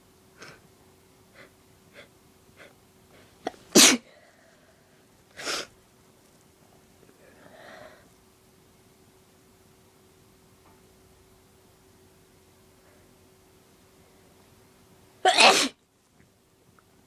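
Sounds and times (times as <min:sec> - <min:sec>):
woman sneezing: 0:03.5 - 0:04.1, 0:15.3 - 0:15.8.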